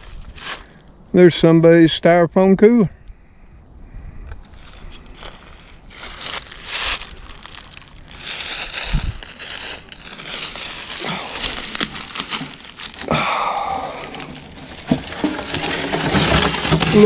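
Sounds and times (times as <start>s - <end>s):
footsteps crunching through dry leaves: 0.0s - 0.9s, 4.5s - 17.0s
twigs snapping: 4.4s - 17.0s.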